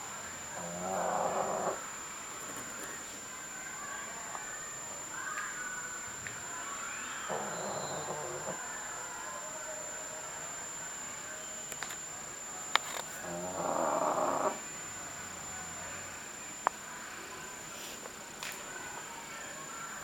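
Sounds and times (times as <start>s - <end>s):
dog snoring: 0.6s - 1.8s, 7.3s - 8.6s, 13.2s - 14.6s.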